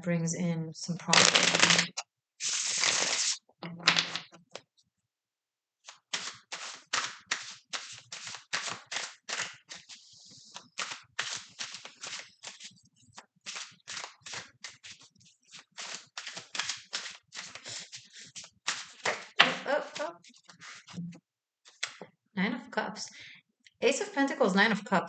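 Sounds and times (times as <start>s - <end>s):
cards being shuffled: 1.1s - 4.3s, 5.9s - 21.0s, 21.7s - 22.0s
cards sliding hiss: 2.4s - 3.4s.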